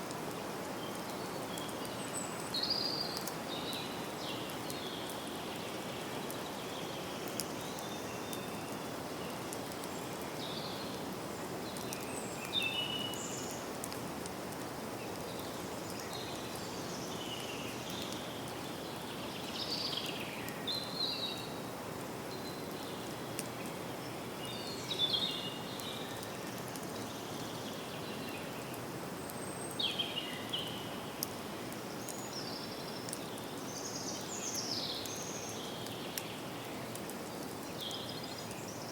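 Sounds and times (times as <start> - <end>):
steady background hiss: 0.0 - 38.9.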